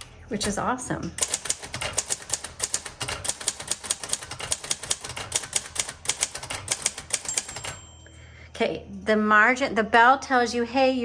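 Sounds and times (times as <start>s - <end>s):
manual typewriter typing: 1.2s - 7.9s.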